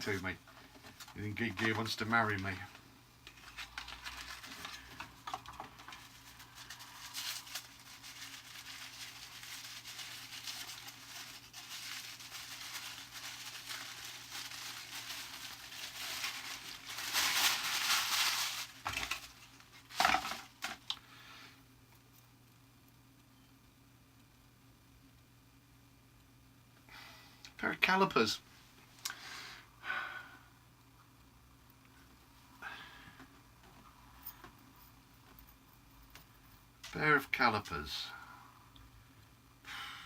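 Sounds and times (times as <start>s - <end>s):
packaging rustling and crinkling: 3.2s - 21.0s.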